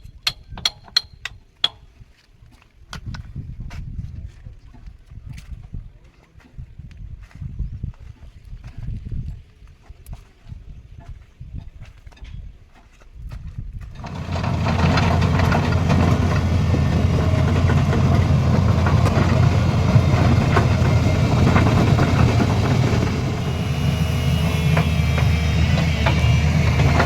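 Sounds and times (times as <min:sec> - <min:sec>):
diesel engine running: 0:14.0 - 0:27.0
metallic knocks: 0:14.0 - 0:27.0.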